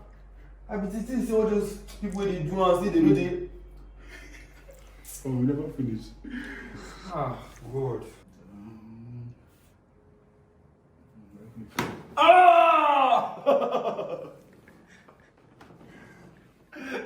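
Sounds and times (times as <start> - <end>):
person crying out: 12.2 - 13.8.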